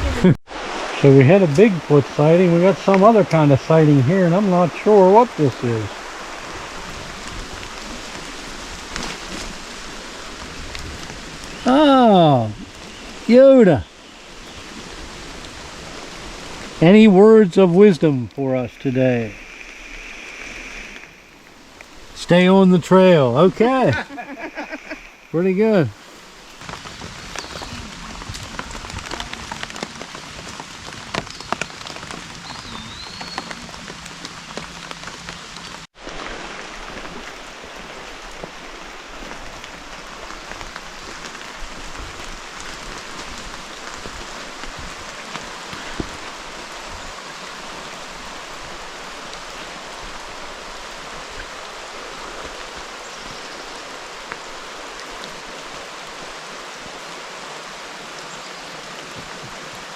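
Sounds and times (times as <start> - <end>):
steady rain falling: 0.0 - 59.9
sharp raindrop taps: 1.5 - 13.0, 26.4 - 50.2.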